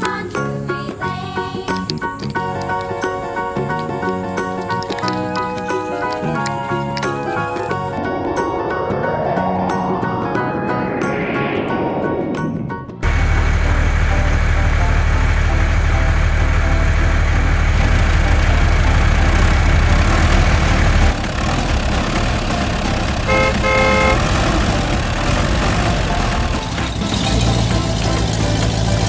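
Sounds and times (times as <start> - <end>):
vehicle engine running: 13.0 - 29.0
horn toots: 17.8 - 28.6.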